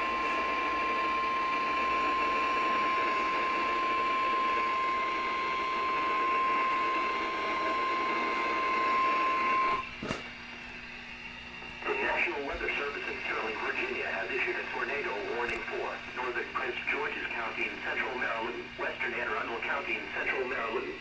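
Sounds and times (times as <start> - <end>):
steady high alarm tone: 0.0 - 9.8
radio hiss: 11.8 - 21.0.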